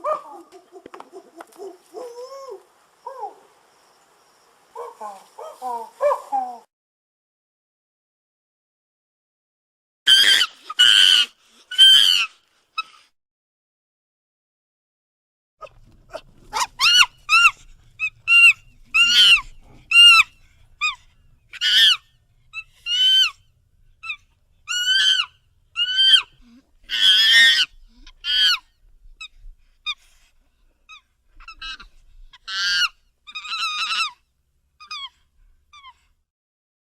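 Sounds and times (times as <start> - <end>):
monkey calls: 0.0 - 3.4, 10.1 - 13.0, 15.6 - 30.0, 30.9 - 34.2, 34.8 - 36.0.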